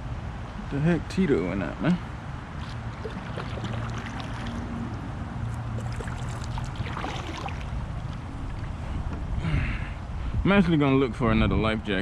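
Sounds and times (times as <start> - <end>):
water lapping against kayak hull: 2.5 - 9.3.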